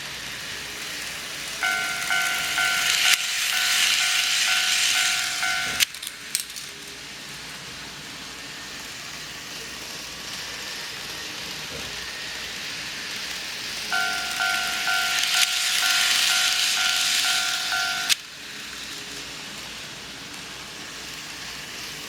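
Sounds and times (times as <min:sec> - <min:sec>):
level crossing warning bell: 0:00.5 - 0:08.1, 0:13.2 - 0:19.3.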